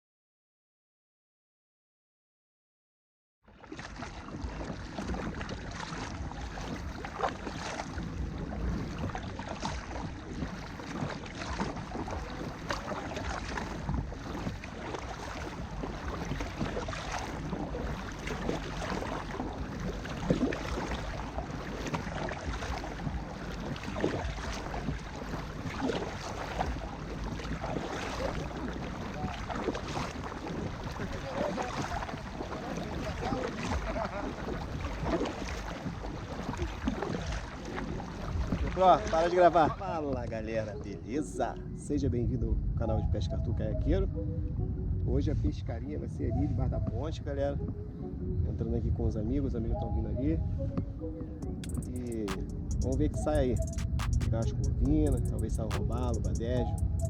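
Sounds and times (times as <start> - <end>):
water splashing around a kayak: 3.5 - 57.0
wind on the microphone: 4.0 - 57.0.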